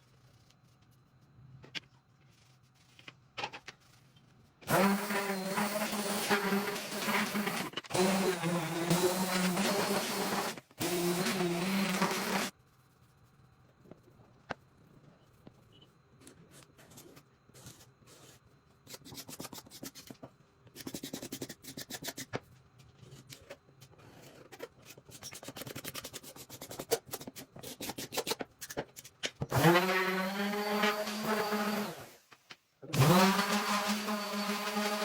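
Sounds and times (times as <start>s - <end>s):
hand rubbing and scraping wood: 2.2s - 12.6s.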